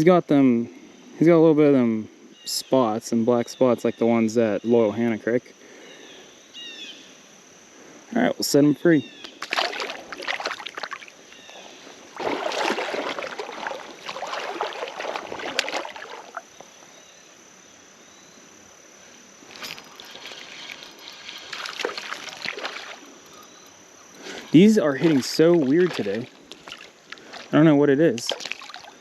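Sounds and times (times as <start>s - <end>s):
creek water splashing: 9.4s - 16.6s, 19.5s - 23.4s, 24.2s - 29.0s.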